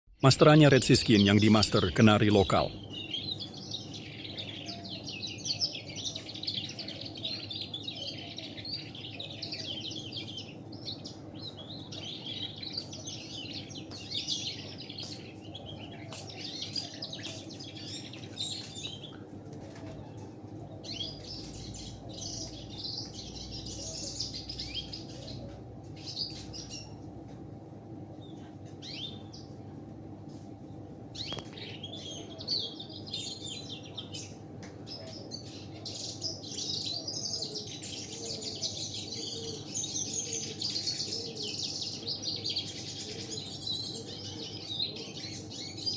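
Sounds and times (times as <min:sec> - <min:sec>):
finch twittering song: 0:00.2 - 0:19.2, 0:20.8 - 0:27.0
low background hum: 0:00.2 - 0:45.9.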